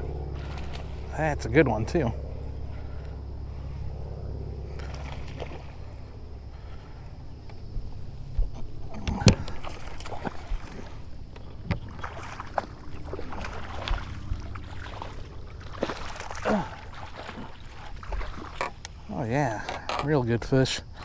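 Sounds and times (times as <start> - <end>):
steady low rumble: 0.0 - 21.0.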